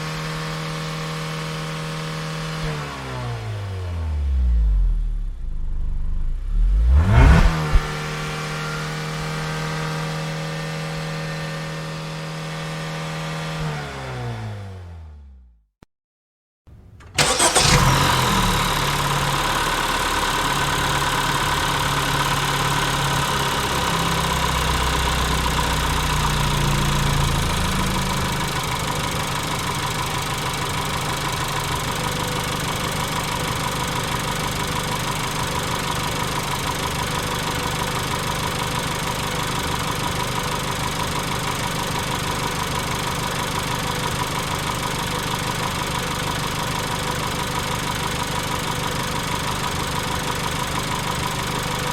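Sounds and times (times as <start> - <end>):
car engine idling: 3.7 - 10.1, 17.2 - 51.9.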